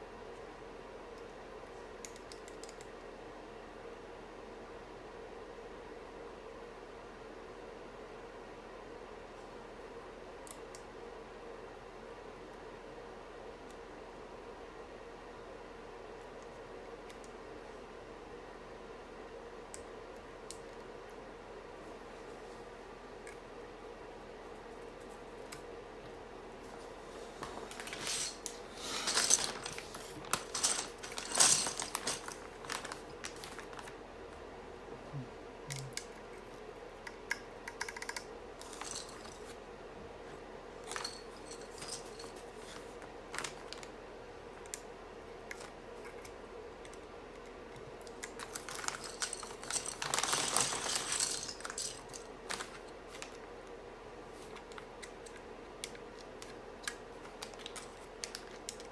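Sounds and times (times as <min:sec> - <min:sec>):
keyboard parts clicking: 0:37.1 - 0:38.3.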